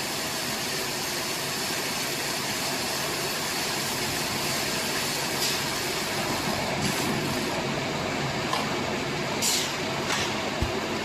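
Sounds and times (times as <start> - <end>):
hay baling machine running: 0.0 - 11.0.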